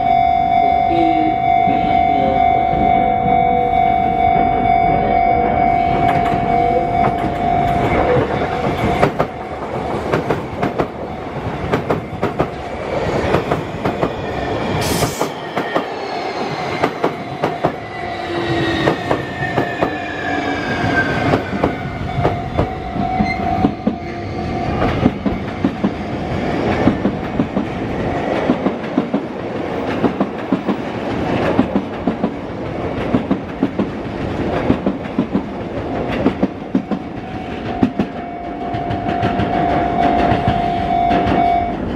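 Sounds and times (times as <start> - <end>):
level crossing bell ringing: 0.0 - 9.1
train wheels clattering: 6.0 - 41.9.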